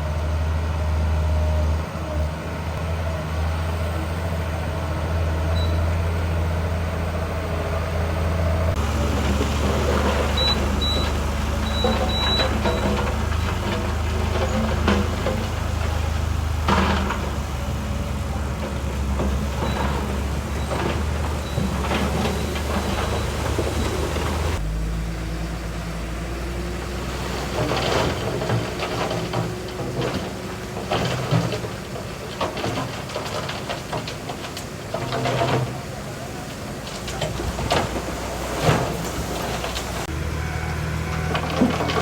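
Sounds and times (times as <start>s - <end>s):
heavy diesel engine running: 0.0s - 42.0s
metal clanks and knocks: 8.8s - 24.6s, 27.5s - 36.0s.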